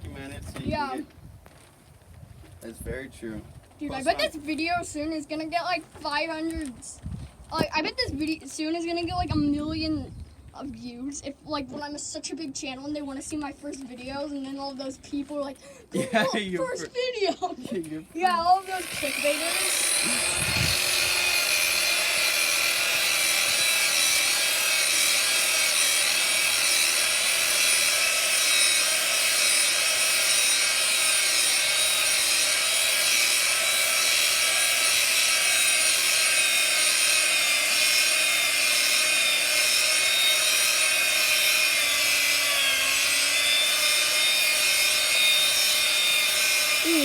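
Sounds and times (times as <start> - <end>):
sander grinding on concrete: 17.8 - 47.0
power sander whine: 18.5 - 47.0.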